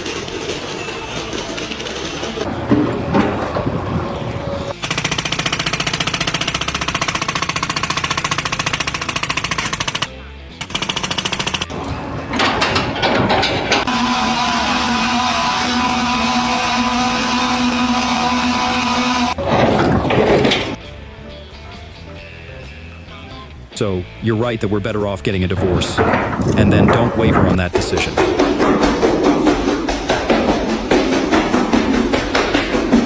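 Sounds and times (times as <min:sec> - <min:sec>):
clatter: 0:01.4 - 0:14.1, 0:15.2 - 0:20.8
power tool hammering: 0:02.4 - 0:20.8, 0:25.6 - 0:33.0.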